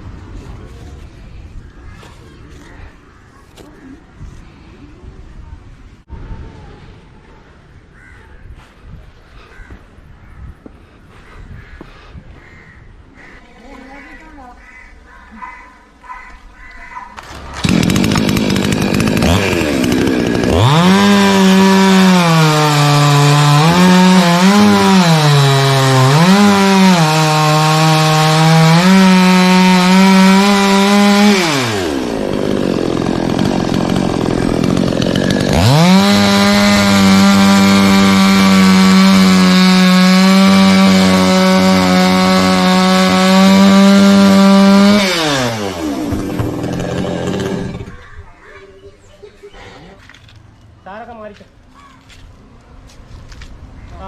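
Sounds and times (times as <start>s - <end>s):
chainsaw cutting wood: 17.2s - 48.0s.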